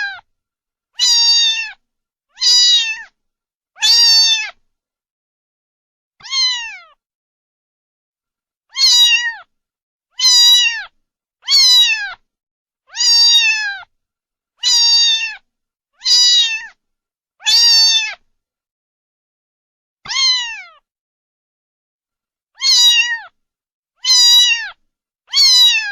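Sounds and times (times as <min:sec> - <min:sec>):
cat meowing: 0:00.0 - 0:00.3, 0:01.0 - 0:01.8, 0:02.4 - 0:03.1, 0:03.8 - 0:04.6, 0:06.2 - 0:07.0, 0:08.7 - 0:09.5, 0:10.2 - 0:12.2, 0:12.9 - 0:13.9, 0:14.6 - 0:15.4, 0:16.0 - 0:16.8, 0:17.4 - 0:18.2, 0:20.1 - 0:20.8, 0:22.6 - 0:23.4, 0:24.0 - 0:25.9.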